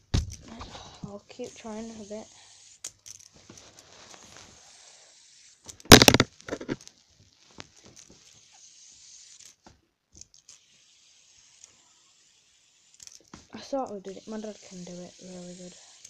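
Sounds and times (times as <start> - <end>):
fidget spinner clicks and rustles: 0.3 - 16.0
handling noise rustling clatter: 5.9 - 6.9.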